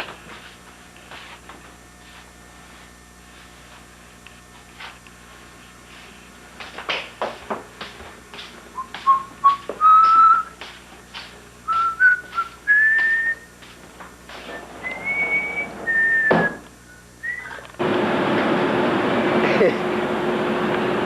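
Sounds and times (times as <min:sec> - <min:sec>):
person whistling a tune: 0:08.8 - 0:10.6, 0:11.7 - 0:13.5, 0:14.5 - 0:17.6.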